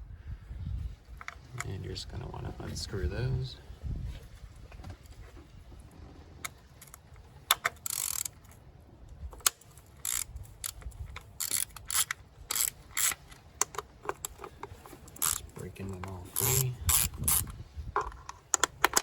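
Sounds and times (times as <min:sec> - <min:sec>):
bolts cracking loose: 0:06.4 - 0:08.6, 0:09.3 - 0:19.0
socket ratchet clicking: 0:06.4 - 0:08.6, 0:09.4 - 0:19.0.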